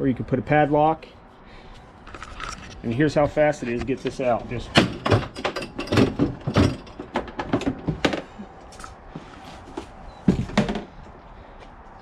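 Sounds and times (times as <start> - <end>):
latch clicks and knocks: 4.1 - 9.0
cooler thunk: 4.7 - 8.3.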